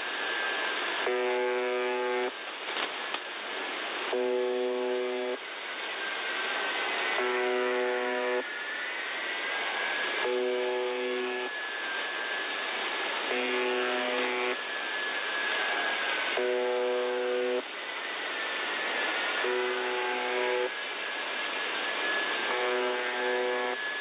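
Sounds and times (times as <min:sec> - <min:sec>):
coarse radio buzz tone: 0:00.0 - 0:02.4, 0:04.0 - 0:06.1, 0:06.9 - 0:24.0
static hiss: 0:00.0 - 0:24.0
faint drifting whistle tone: 0:21.8 - 0:24.0.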